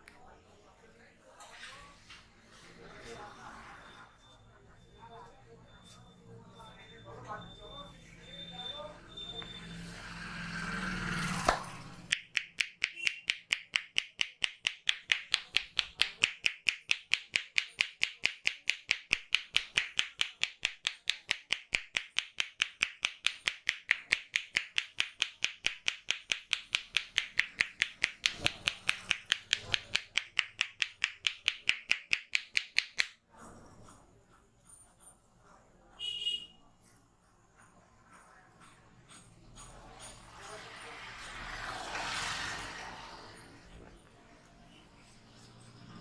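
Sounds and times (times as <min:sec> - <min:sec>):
hands tapping on a head: 0:11.5 - 0:33.2.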